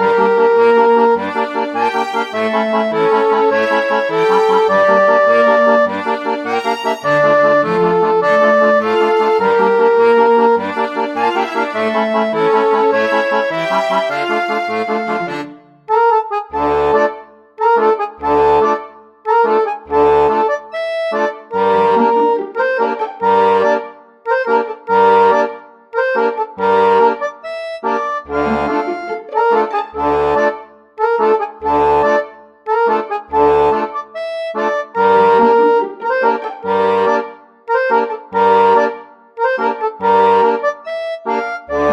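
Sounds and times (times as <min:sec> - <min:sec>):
melody over bass beat: 0:02.0 - 0:16.0, 0:28.3 - 0:30.4.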